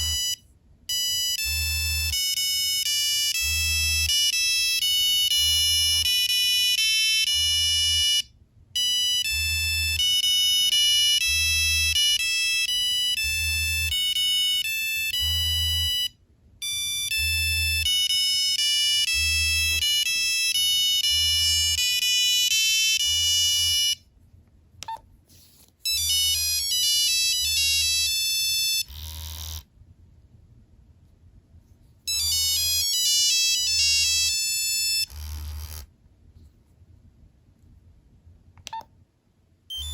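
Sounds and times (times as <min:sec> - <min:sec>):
monophonic phone ringtones: 0:00.0 - 0:24.0, 0:25.9 - 0:29.6, 0:32.1 - 0:35.8.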